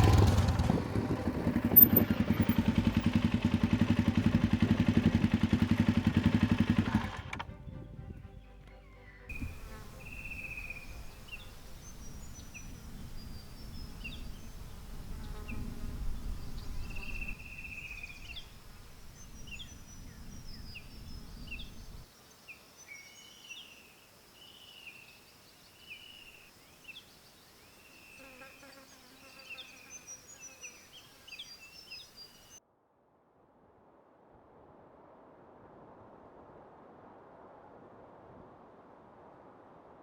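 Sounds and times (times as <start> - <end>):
low rumble: 0.0 - 5.3
forest birds chirping: 1.6 - 32.6.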